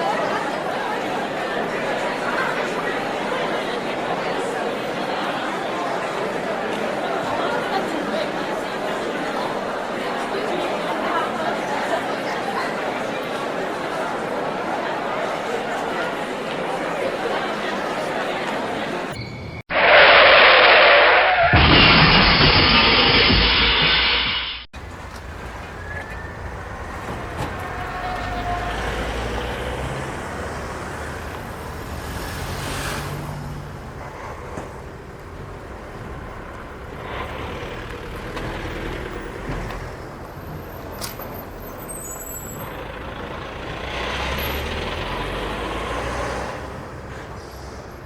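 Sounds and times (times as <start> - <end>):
trucks and vehicles passing: 24.8 - 48.0.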